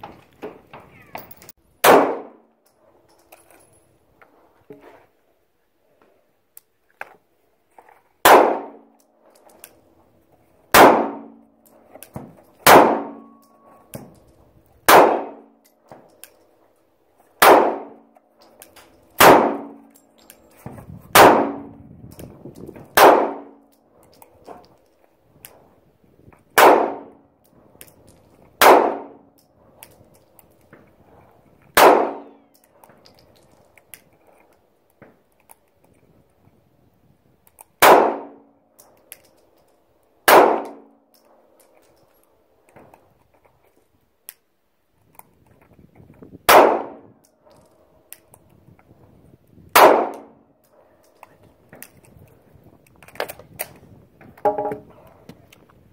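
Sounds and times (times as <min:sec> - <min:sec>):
gunshots with ringing tail: 0:01.8 - 0:02.4, 0:08.2 - 0:08.9, 0:10.7 - 0:11.5, 0:12.6 - 0:13.8, 0:14.8 - 0:15.5, 0:17.4 - 0:18.0, 0:19.2 - 0:19.9, 0:21.1 - 0:21.8, 0:22.9 - 0:23.6, 0:26.6 - 0:27.2, 0:28.6 - 0:29.2, 0:31.8 - 0:32.4, 0:37.8 - 0:38.4, 0:40.3 - 0:40.9, 0:46.5 - 0:47.1, 0:49.8 - 0:50.4.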